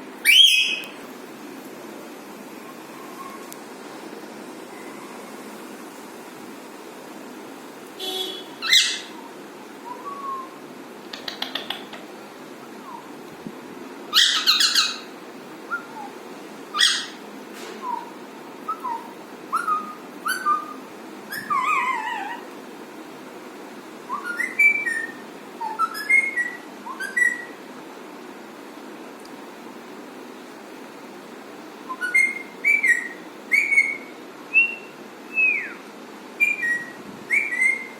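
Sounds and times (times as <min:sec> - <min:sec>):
parakeet whistled chirps: 0:00.2 - 0:00.9, 0:08.6 - 0:09.2, 0:14.1 - 0:15.1, 0:16.7 - 0:17.2, 0:18.7 - 0:22.2, 0:24.1 - 0:27.6, 0:31.9 - 0:35.8, 0:36.4 - 0:37.9
parakeet squawking: 0:00.3 - 0:00.8, 0:08.4 - 0:09.2, 0:14.1 - 0:15.1, 0:16.7 - 0:17.2.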